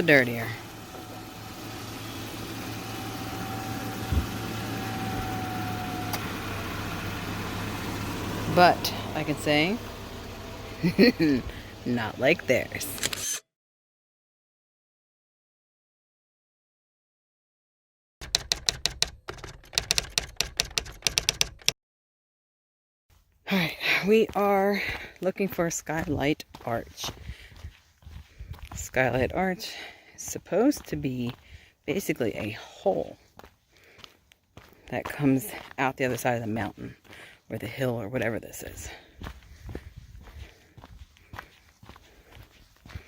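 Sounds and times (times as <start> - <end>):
vehicle engine running: 0.0 - 13.3, 18.2 - 21.7, 24.2 - 29.8, 34.6 - 43.0
dull low thump: 3.9 - 5.4
rapid sharp clicks: 18.2 - 21.8.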